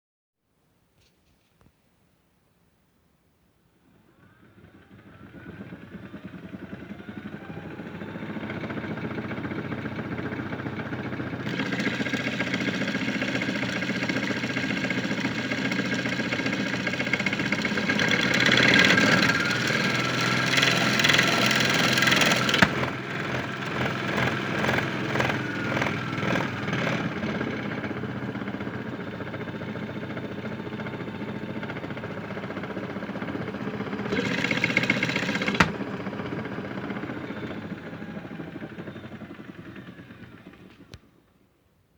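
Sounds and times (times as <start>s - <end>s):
toy washing machine motor whirring: 11.4s - 14.4s, 16.6s - 25.8s, 34.1s - 36.0s.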